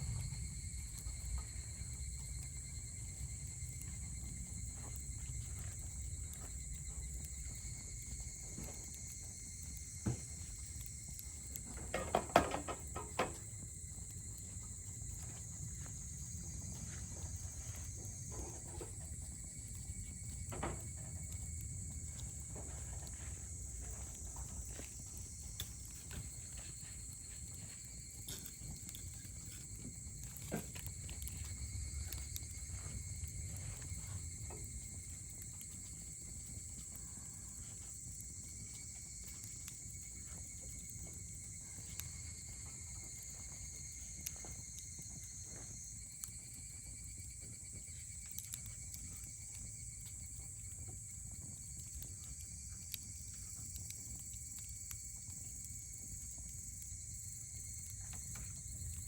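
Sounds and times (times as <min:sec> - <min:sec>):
campfire crackling and popping: 0:00.0 - 0:59.0
insects chirring: 0:00.0 - 0:59.0.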